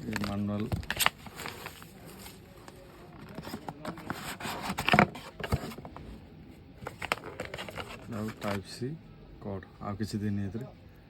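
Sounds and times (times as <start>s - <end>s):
packaging rustling and crinkling: 0.0s - 5.9s, 6.8s - 8.6s.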